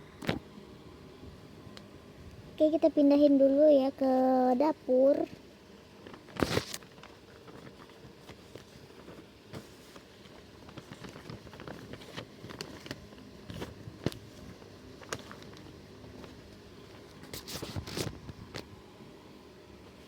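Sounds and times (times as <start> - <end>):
paper rustling: 6.0 - 18.7.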